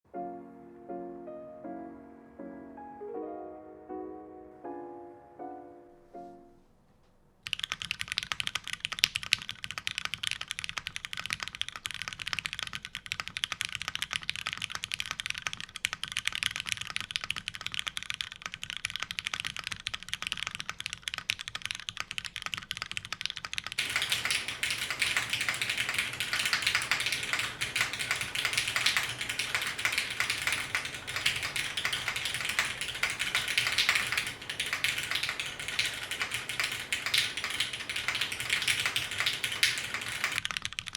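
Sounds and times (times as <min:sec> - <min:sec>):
fast mechanical keyboard typing: 0:07.4 - 0:40.9.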